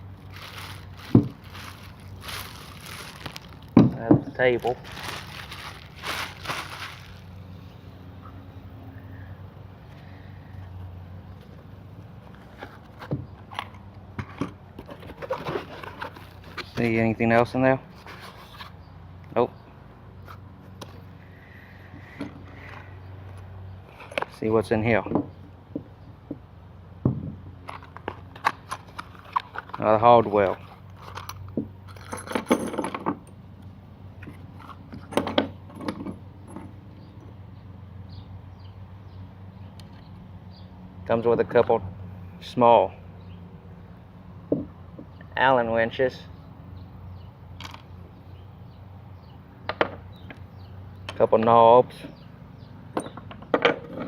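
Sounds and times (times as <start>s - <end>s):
packaging scrapes and knocks: 0.2s - 3.8s, 14.8s - 16.8s.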